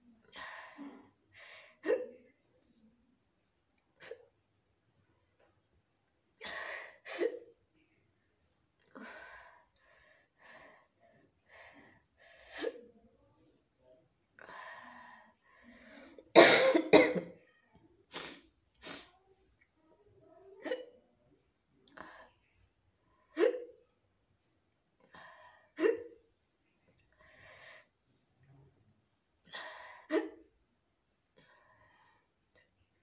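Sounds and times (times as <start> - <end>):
person coughing: 16.3 - 17.3.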